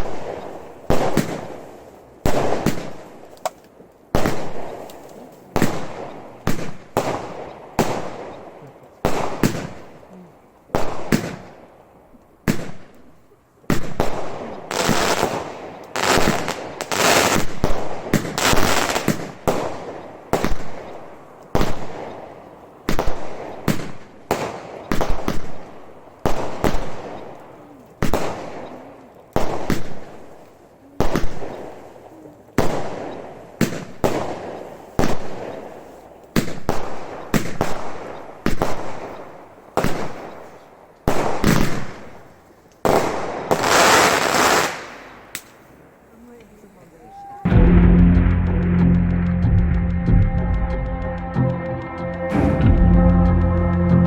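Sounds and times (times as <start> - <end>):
firework barrage bangs: 13.7 - 20.8, 47.5 - 51.2.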